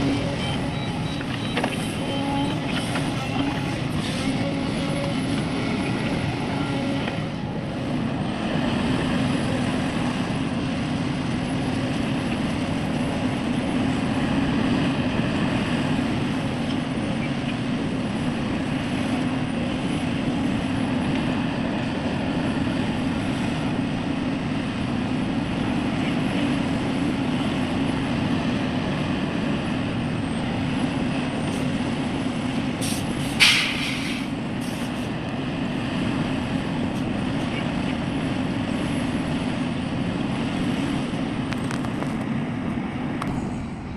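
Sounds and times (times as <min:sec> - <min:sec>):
heavy diesel machinery running: 0:00.0 - 0:43.9
short sharp hiss: 0:32.8 - 0:35.0.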